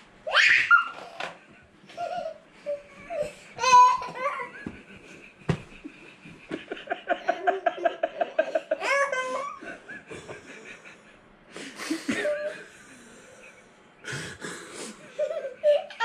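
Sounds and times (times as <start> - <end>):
child laughing and squealing: 0.3 - 1.4.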